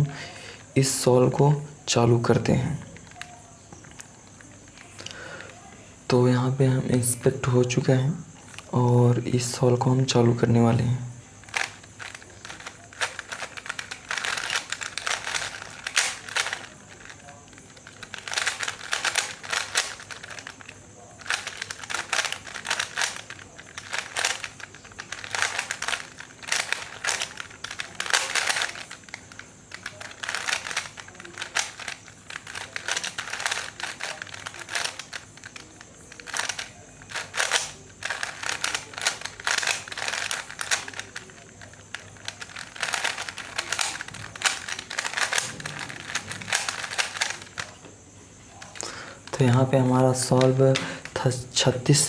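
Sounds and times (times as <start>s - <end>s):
puzzle cube clicking: 11.4s - 47.8s.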